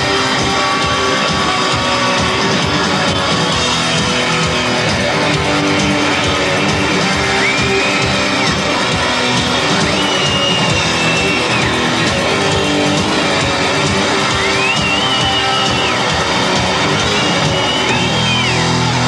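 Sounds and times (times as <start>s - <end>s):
bass guitar: 0.0s - 19.0s
strummed electric guitars: 0.0s - 19.0s.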